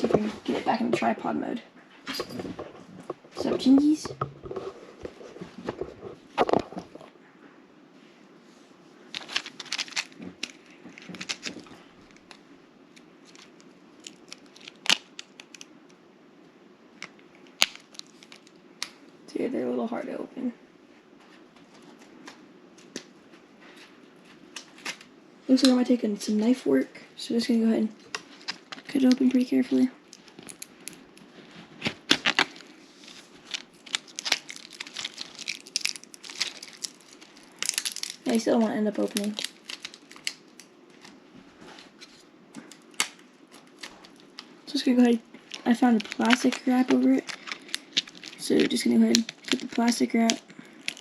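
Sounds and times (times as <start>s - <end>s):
plastic packaging crackling: 9.1s - 15.9s, 16.9s - 19.1s, 28.0s - 51.0s.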